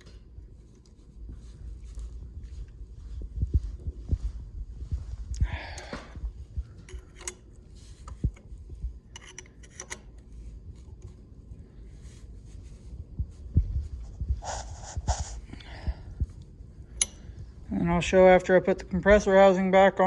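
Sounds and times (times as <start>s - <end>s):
sharp metal clicks of hand tools: 17.0s - 17.2s.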